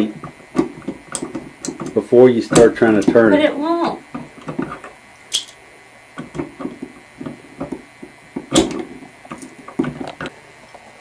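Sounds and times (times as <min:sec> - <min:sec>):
small knocks: 0:06.2 - 0:10.4.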